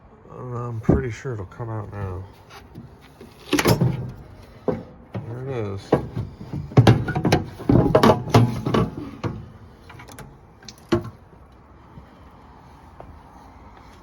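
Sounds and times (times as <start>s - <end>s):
plastic box knocking and rattling: 3.5s - 9.6s.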